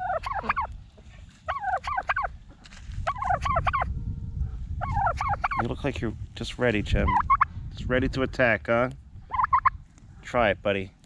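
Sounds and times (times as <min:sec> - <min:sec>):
turkeys gobbling: 0:00.0 - 0:03.9, 0:04.8 - 0:05.7, 0:07.0 - 0:07.5, 0:09.3 - 0:09.8.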